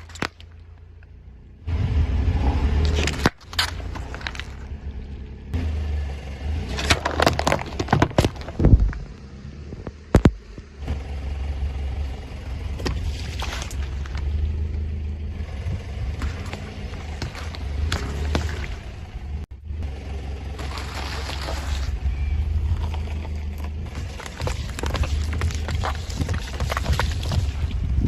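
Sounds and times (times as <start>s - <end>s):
tyres popping and cracking objects: 0.0s - 1.1s, 2.8s - 4.8s, 6.7s - 10.7s, 12.8s - 14.4s, 16.1s - 19.1s, 20.6s - 22.0s, 22.7s - 27.9s
car engine rumbling: 0.0s - 28.0s.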